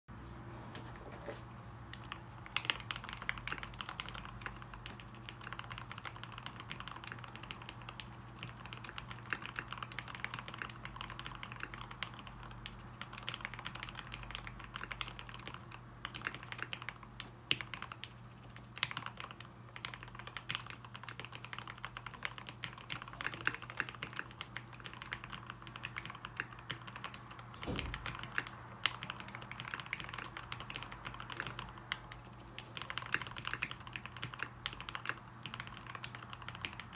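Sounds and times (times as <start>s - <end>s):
mechanical keyboard typing: 1.9s - 36.9s
deep thump: 27.6s - 28.1s.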